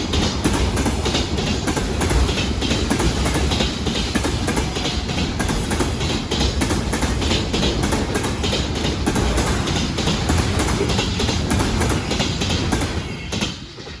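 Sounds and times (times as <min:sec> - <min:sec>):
train wheels clattering over rail joints: 0:00.0 - 0:14.0.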